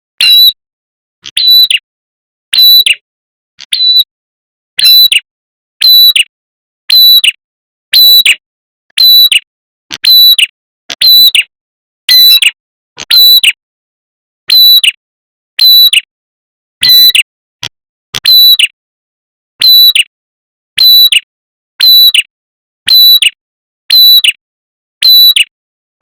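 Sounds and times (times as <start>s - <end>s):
bird calling in sharp notes: 0.2s - 0.6s, 1.3s - 1.8s, 6.9s - 7.3s, 9.0s - 9.4s, 10.0s - 11.5s, 18.2s - 18.6s.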